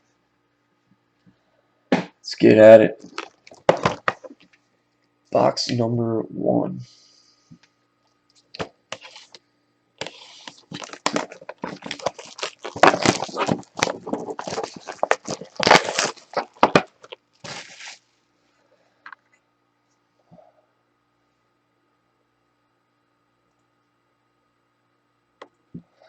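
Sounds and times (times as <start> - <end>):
plastic shrink wrap crinkling: 3.0 - 4.6, 8.3 - 9.4, 10.0 - 18.1.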